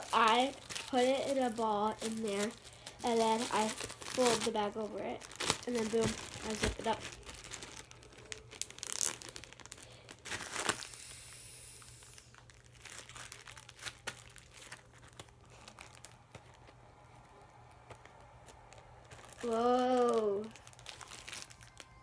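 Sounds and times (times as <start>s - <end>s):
sharp crackles and clicks: 0.0s - 9.7s
plastic bag crinkling: 0.0s - 11.0s, 11.8s - 22.0s.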